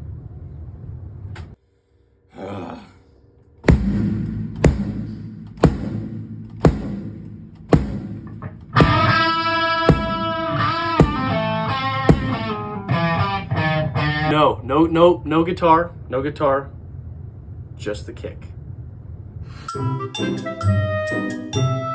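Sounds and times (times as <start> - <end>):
kick drum hits: 3.6 - 12.7
distorted electric guitar chords: 7.2 - 14.3.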